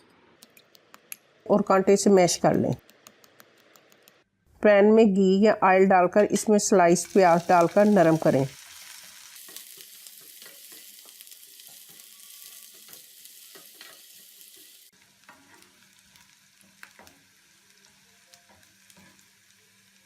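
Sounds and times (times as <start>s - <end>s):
onions sizzling in a pan: 6.6s - 20.0s
spoon scraping a pan: 9.4s - 14.7s, 15.3s - 15.8s.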